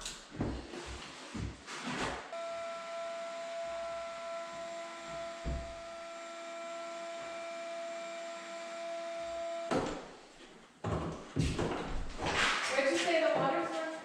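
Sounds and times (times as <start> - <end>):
small motor whining: 2.3 - 10.0.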